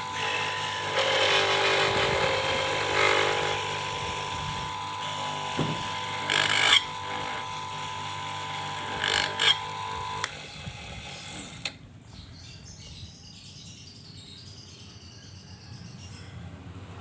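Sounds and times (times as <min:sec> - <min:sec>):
lathe motor whining: 0:00.0 - 0:11.8.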